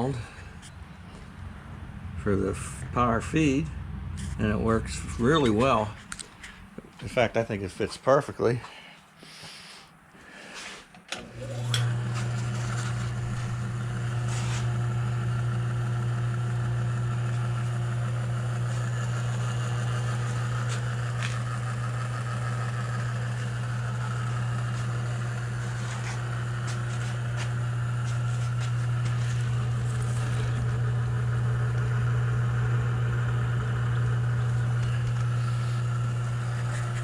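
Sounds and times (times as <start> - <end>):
milling machine humming: 11.0 - 37.0.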